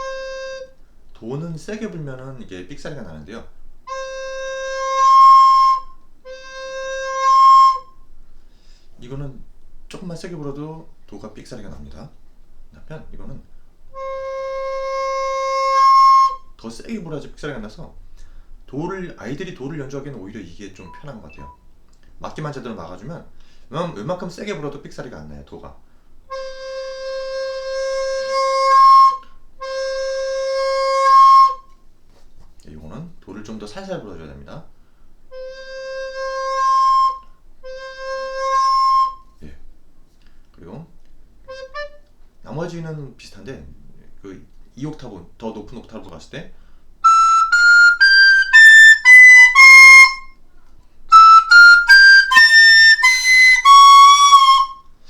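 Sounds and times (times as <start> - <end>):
recorder playing rising scale: 3.9 - 7.9, 35.3 - 39.3, 41.5 - 42.0, 47.0 - 50.4, 51.1 - 54.8
recorder low note squeaking: 20.8 - 21.7.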